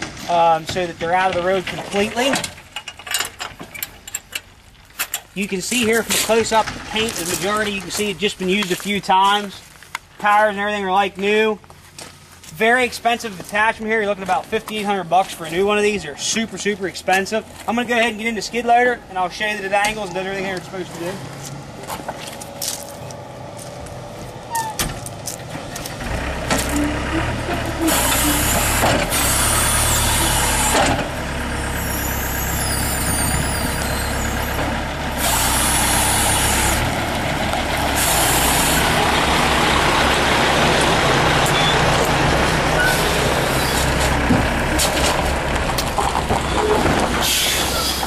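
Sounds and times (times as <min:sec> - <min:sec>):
loader engine running: 0:11.6 - 0:48.0
hydraulic hissing and whine: 0:27.7 - 0:31.0, 0:31.6 - 0:36.9, 0:37.8 - 0:39.2.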